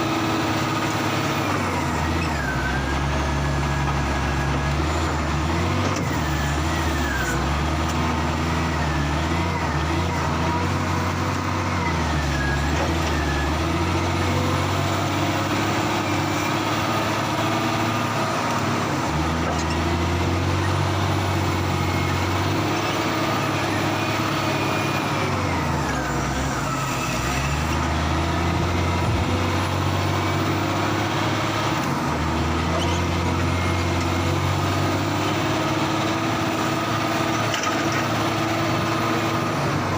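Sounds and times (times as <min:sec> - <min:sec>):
heavy diesel engine revving: 0:00.0 - 0:39.9.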